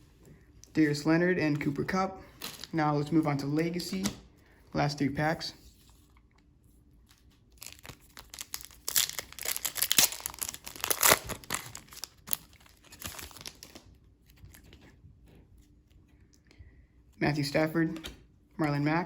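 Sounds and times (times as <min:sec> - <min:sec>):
wrapper tearing and crinkling: 0:07.2 - 0:14.0.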